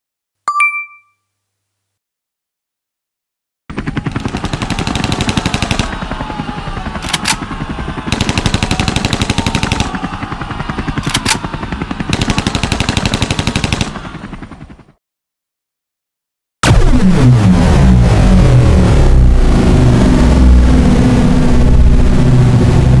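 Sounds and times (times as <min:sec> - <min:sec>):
automatic gunfire: 0:03.7 - 0:14.1.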